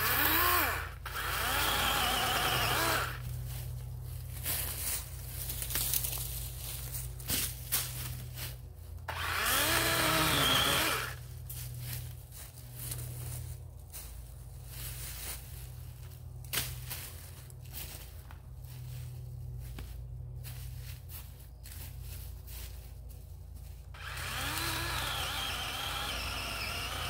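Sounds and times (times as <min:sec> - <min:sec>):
electric chainsaw whine: 0:00.0 - 0:03.4, 0:09.0 - 0:11.3, 0:23.9 - 0:27.0.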